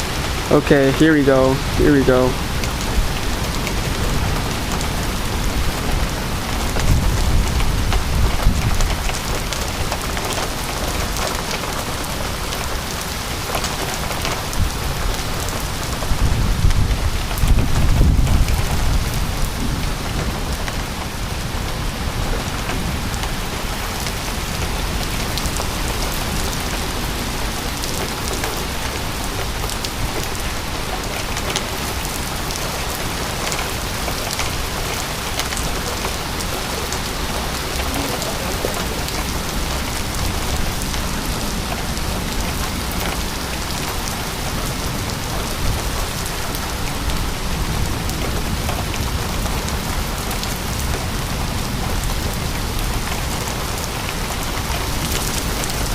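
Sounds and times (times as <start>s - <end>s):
rain falling: 0.0s - 55.9s
low thunder rumble: 1.6s - 9.9s, 14.5s - 33.1s.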